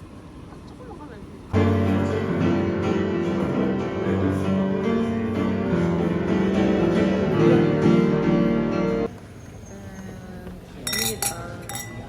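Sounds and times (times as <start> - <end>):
piano background music: 1.6 - 9.1.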